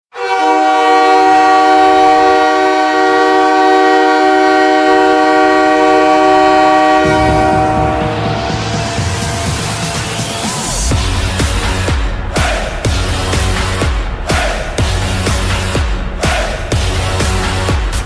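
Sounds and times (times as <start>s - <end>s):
train horn chord: 0.1s - 10.1s
song with heavy beat: 6.8s - 18.0s.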